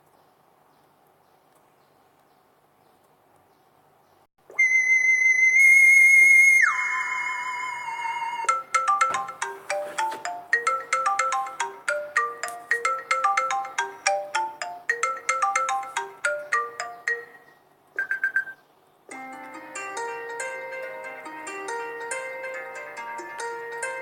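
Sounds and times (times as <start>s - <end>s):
chiming ringtone melody: 8.5s - 24.0s.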